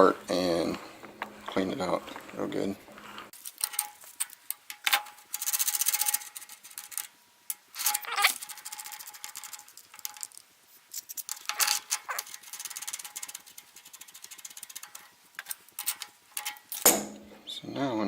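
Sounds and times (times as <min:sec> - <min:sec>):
metal clicks and clinks: 0:03.5 - 0:10.4, 0:11.0 - 0:17.3
ratcheting clicks: 0:11.0 - 0:16.9
metal knocks: 0:16.4 - 0:17.5.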